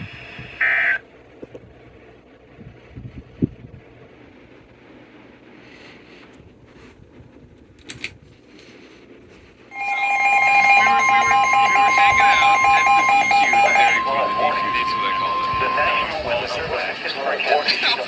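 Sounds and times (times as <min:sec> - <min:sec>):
loud steady alert tone: 0:09.7 - 0:17.0
pulsing lower tone: 0:09.7 - 0:17.0.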